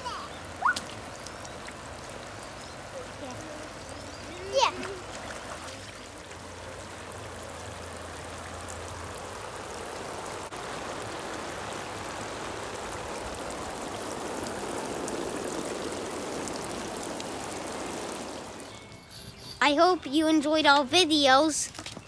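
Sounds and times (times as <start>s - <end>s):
water spraying from jets: 0.0s - 21.9s.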